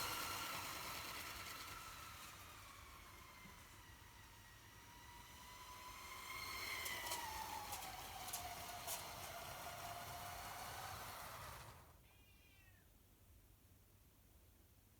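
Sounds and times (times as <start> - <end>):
wheels clicking over track joints: 0.0 - 11.9
toy train motor whine: 0.0 - 12.0.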